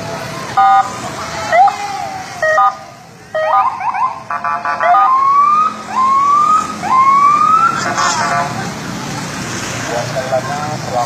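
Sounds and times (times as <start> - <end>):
police siren chirps and whoops: 0.6 - 8.0.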